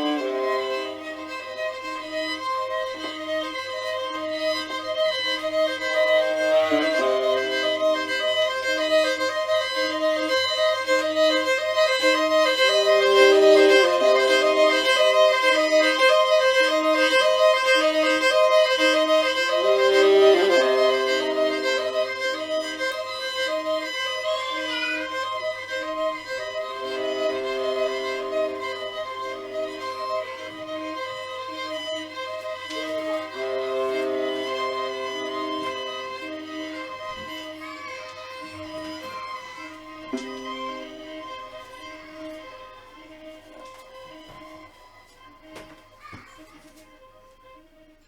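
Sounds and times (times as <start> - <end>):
held violin-like tones: 0.0 - 48.0
low steady drone: 11.8 - 23.0, 26.7 - 30.8.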